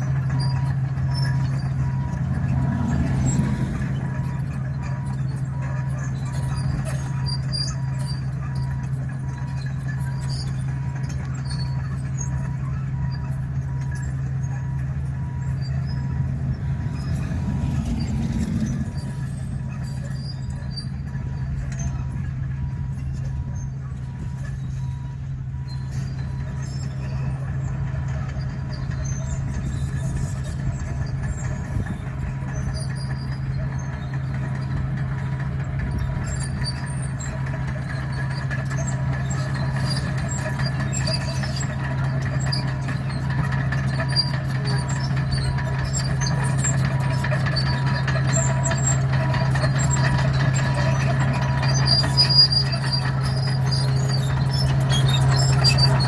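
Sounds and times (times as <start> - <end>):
faint reversing alarm beeps: 0.0 - 28.8
bulldozer diesel engine: 0.0 - 56.0
tracks clicking and crunching: 27.3 - 56.0.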